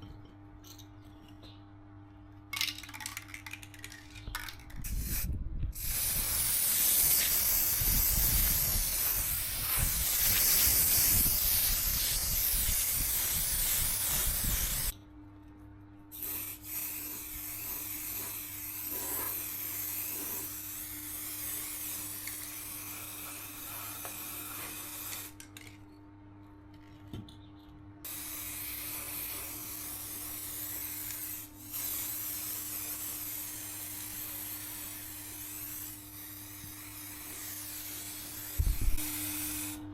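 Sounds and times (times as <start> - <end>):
steady low hum: 0.0 - 39.9
steady hiss: 4.9 - 14.9, 16.2 - 25.4, 28.1 - 39.8.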